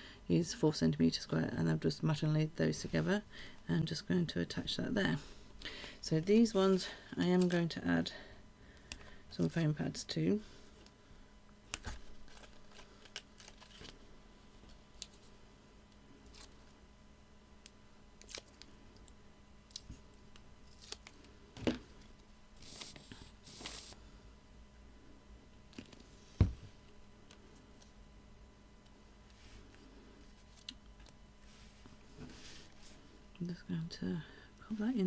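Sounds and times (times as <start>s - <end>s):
paper rustling: 11.7s - 14.0s
knock on table: 26.4s - 26.7s.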